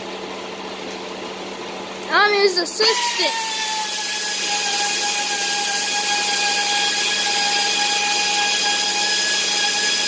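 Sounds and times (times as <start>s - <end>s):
power tool motor whining: 2.8s - 10.0s.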